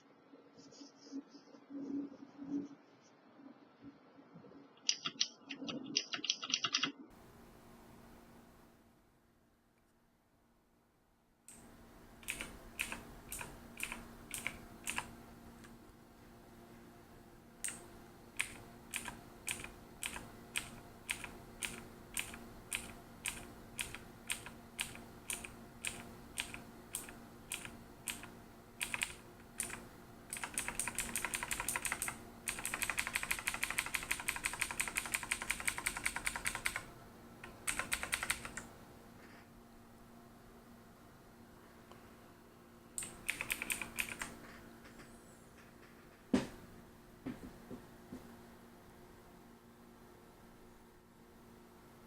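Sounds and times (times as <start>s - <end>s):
mechanical keyboard typing: 4.9s - 7.0s, 12.2s - 15.1s, 18.4s - 38.7s, 43.0s - 44.4s.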